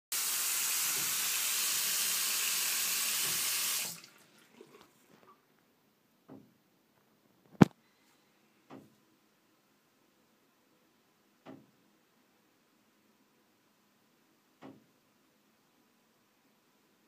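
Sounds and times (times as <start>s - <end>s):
water running: 0.1s - 5.4s.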